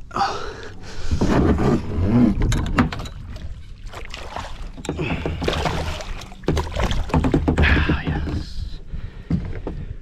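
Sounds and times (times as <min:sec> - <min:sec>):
sharp knocks and clicks: 0:06.4 - 0:08.2.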